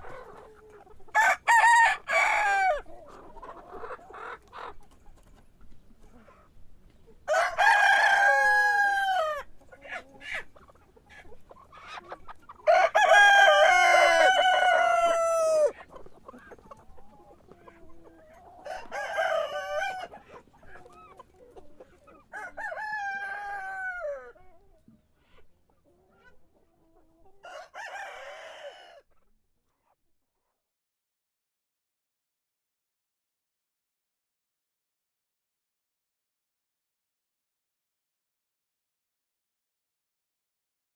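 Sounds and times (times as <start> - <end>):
hens clucking: 0.0 - 30.0
roosters crowing: 1.1 - 2.9, 7.3 - 9.6, 12.6 - 15.8, 18.6 - 20.2, 22.3 - 24.4, 27.4 - 29.0.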